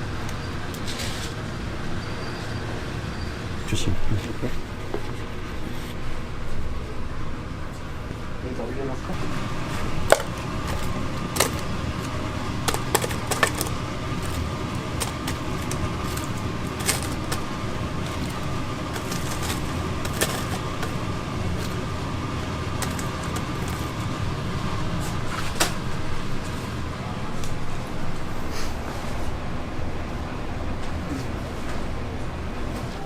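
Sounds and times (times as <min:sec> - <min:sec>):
kitchen equipment hum: 0:00.0 - 0:33.0
utensils clicking and clinking: 0:09.2 - 0:24.3.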